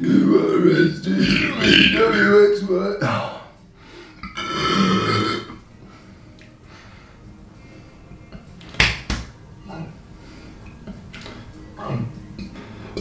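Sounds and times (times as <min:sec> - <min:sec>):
man belching: 0:00.0 - 0:03.5, 0:04.2 - 0:05.6.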